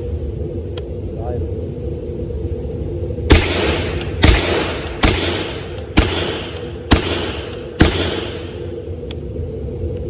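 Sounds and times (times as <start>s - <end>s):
rifle shots with echo: 3.3s - 8.8s.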